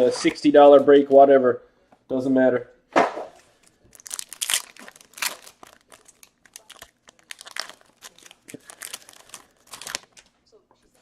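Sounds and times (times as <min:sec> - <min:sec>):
wrappers torn and crinkled: 0:03.6 - 0:10.2.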